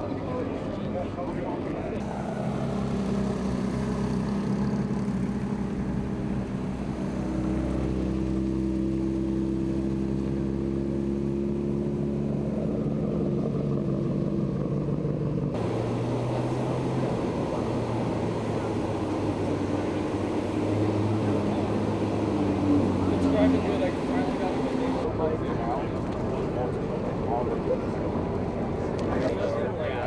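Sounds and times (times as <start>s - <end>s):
car engine running: 15.2s - 25.0s.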